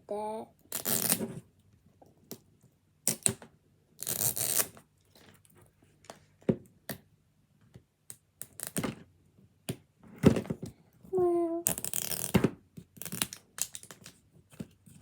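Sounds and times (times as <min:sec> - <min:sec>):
plastic wrapping tearing: 0:00.7 - 0:01.3, 0:04.0 - 0:04.8, 0:11.7 - 0:12.4.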